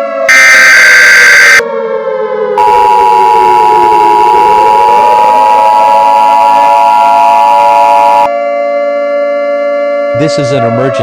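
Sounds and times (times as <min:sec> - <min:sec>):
siren wail: 0:00.0 - 0:11.0
steady high alert tone: 0:00.3 - 0:01.6, 0:02.6 - 0:08.3.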